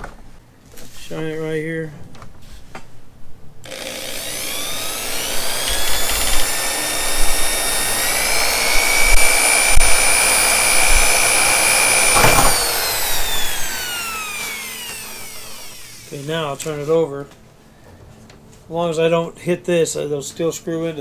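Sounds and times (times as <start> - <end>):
electric drill whining: 3.6 - 16.8.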